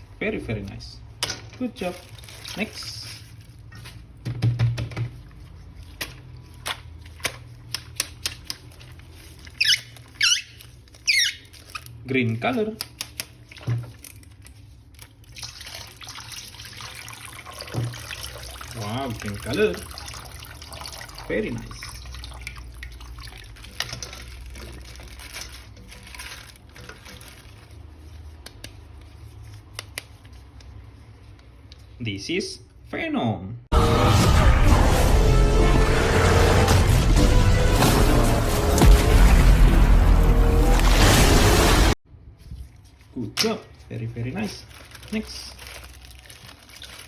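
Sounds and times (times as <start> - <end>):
plastic packaging clicks and crinkles: 1.8 - 4.1, 5.9 - 15.4, 23.4 - 31.8, 44.2 - 47.0
squeaky rasps: 9.6 - 11.5.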